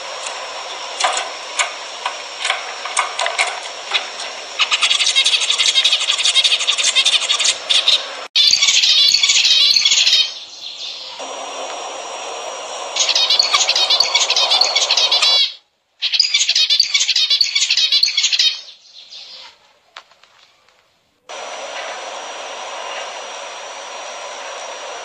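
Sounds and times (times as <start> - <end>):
finches chirping: 0.3 - 11.2, 12.8 - 19.6.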